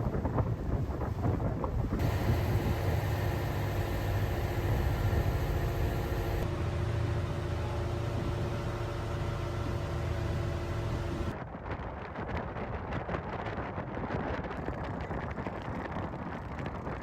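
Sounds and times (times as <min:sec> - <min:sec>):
vehicle engine running: 0:02.0 - 0:11.4.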